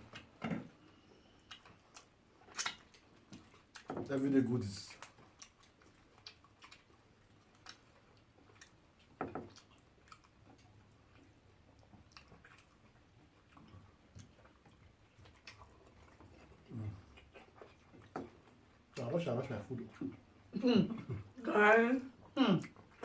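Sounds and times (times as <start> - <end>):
quiet chewing: 0.0 - 21.4, 22.0 - 23.0
small mouth clicks: 1.4 - 3.9.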